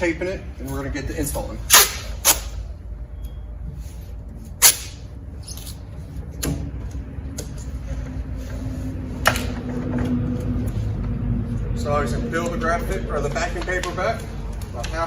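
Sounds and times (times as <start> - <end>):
faint hum: 0.0 - 15.0
masking tape ripping: 1.7 - 2.6, 4.6 - 5.0.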